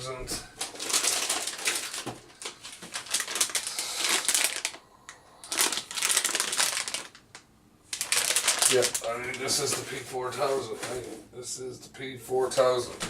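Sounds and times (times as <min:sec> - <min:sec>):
plastic packaging crinkling: 0:00.5 - 0:04.8, 0:05.4 - 0:11.0.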